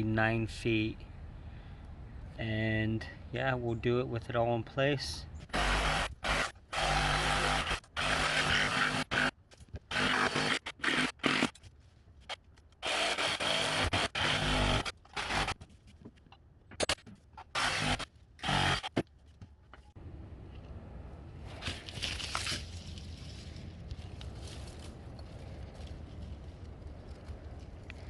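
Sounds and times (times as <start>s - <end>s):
multi-tool cutting wood and nails: 5.5s - 15.7s, 16.7s - 19.2s.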